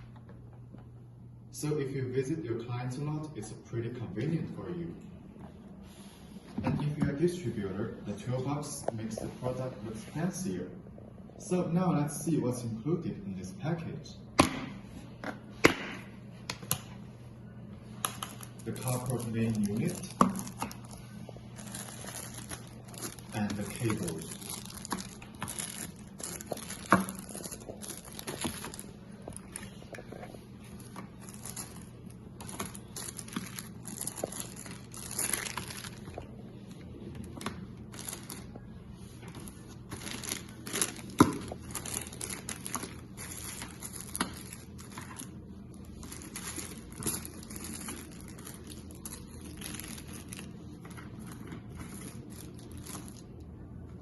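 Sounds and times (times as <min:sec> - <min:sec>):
plastic packaging crinkling: 0:17.9 - 0:53.5.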